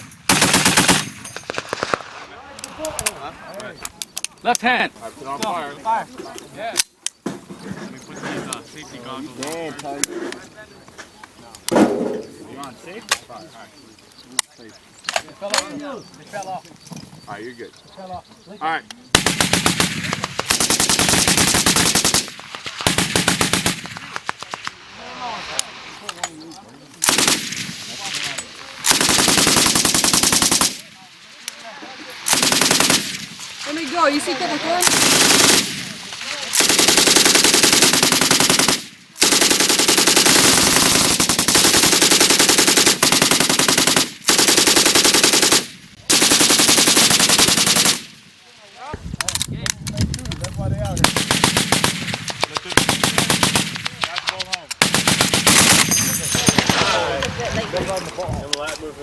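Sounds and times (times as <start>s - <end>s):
machine gun firing bursts: 0.0s - 2.1s, 19.1s - 24.6s, 27.0s - 28.0s, 28.8s - 30.9s, 32.3s - 48.2s, 51.0s - 57.1s
single gunshots: 0.0s - 2.5s, 27.0s - 30.9s.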